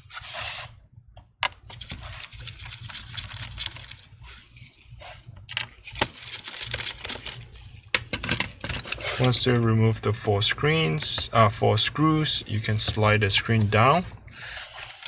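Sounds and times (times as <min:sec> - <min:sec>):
screwdriver scraping and rattling: 0:01.4 - 0:04.0, 0:05.5 - 0:07.3, 0:08.0 - 0:09.4.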